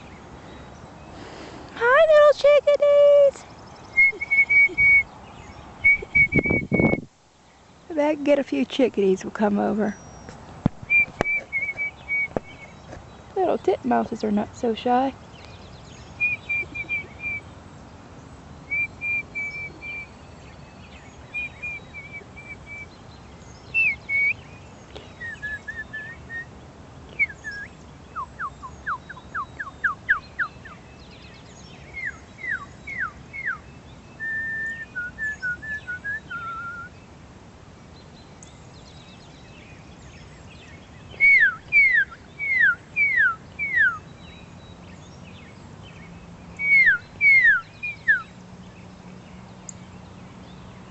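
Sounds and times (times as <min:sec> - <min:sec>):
person whistling bird calls: 0:04.0 - 0:05.1, 0:05.8 - 0:07.1, 0:10.9 - 0:12.5, 0:16.2 - 0:17.4, 0:18.7 - 0:20.0, 0:23.8 - 0:24.4, 0:25.2 - 0:26.5, 0:27.2 - 0:30.5, 0:34.2 - 0:36.9, 0:41.2 - 0:44.0, 0:46.6 - 0:48.3.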